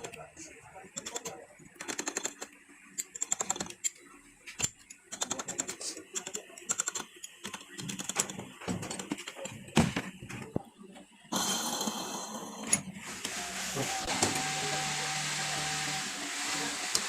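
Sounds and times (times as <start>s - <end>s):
ratchet wrench clicking: 6.3s - 8.3s.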